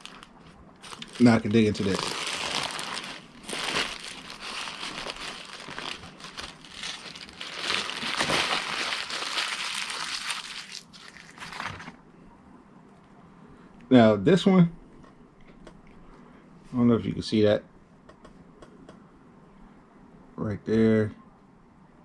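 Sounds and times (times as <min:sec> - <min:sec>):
paper wrapping crinkling: 0:00.0 - 0:12.0.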